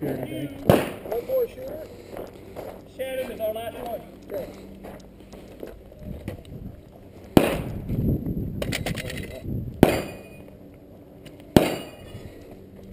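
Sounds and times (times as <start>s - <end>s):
gunshots: 0.6s - 1.1s, 7.3s - 7.8s, 8.7s - 10.4s, 11.6s - 12.0s.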